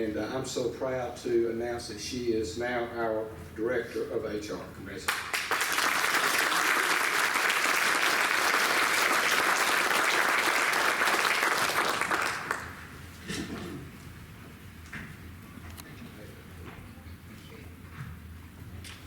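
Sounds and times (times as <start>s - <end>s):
audience applause: 5.1s - 12.9s.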